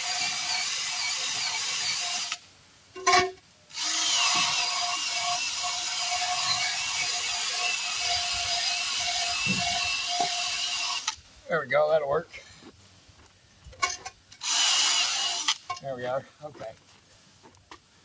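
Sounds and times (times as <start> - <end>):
power tool scrubbing metal: 3.8 - 11.1.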